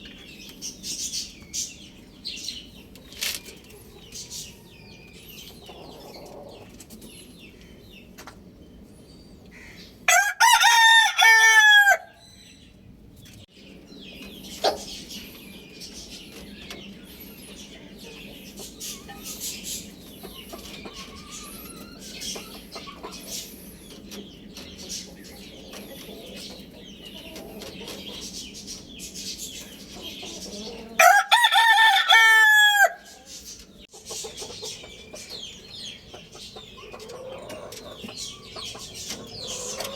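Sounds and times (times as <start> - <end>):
chicken calls: 0.0 - 12.4, 13.3 - 39.9
rooster crowing: 10.1 - 12.2, 31.0 - 33.2.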